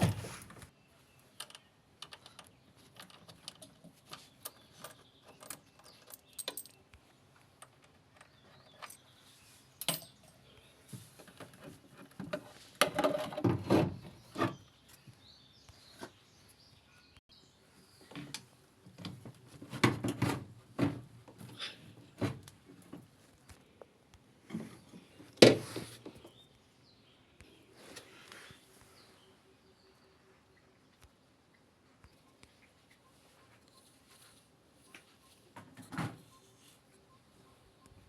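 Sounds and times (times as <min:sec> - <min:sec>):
knocks and scrapes of hand work: 0:10.9 - 0:14.7, 0:19.0 - 0:23.0.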